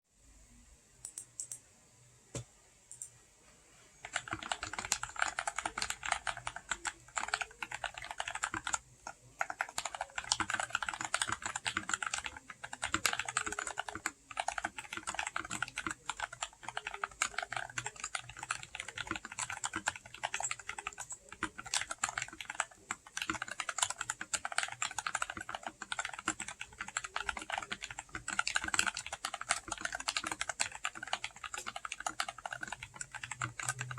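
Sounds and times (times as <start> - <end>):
mechanical keyboard typing: 4.0 - 33.9.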